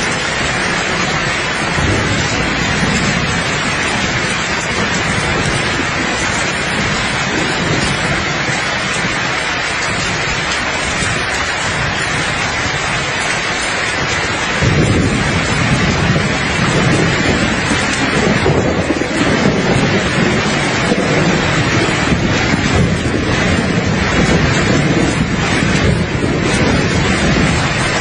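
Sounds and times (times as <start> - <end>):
rain hiss: 0.0 - 28.0
thunder rumbling: 0.0 - 28.0.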